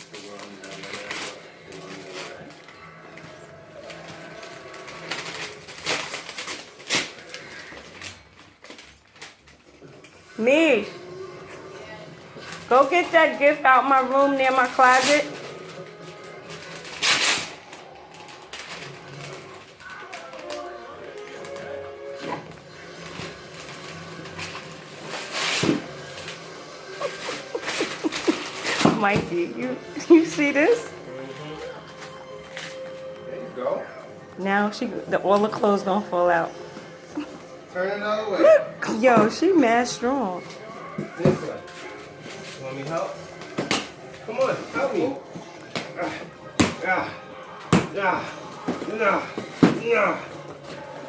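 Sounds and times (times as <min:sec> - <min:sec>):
wrapping paper rustling and crinkling: 0:00.0 - 0:10.7, 0:11.5 - 0:33.6, 0:40.4 - 0:46.6.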